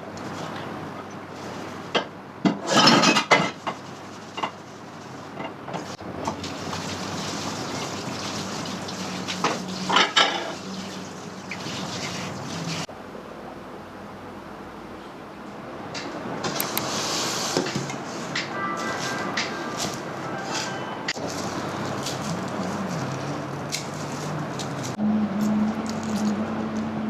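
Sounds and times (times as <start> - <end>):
dishes clinking and clattering: 2.0 - 4.6, 7.6 - 12.9
running water: 6.1 - 12.9, 21.2 - 25.0.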